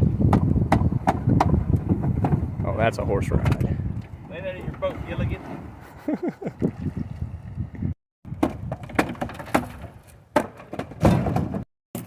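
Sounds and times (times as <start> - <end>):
wood knocking and cracking: 8.3 - 12.0
wooden boards creaking: 8.3 - 12.0.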